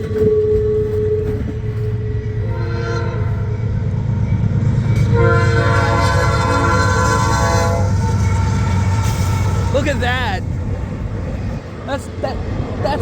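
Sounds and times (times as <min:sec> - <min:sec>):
locomotive air horn chord: 0:00.0 - 0:03.6, 0:04.9 - 0:09.9
passing train rumble: 0:00.0 - 0:13.0.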